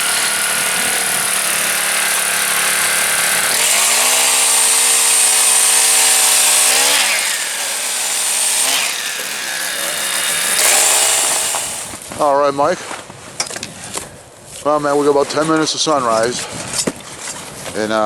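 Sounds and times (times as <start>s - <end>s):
small gas engine running: 0.0s - 12.0s.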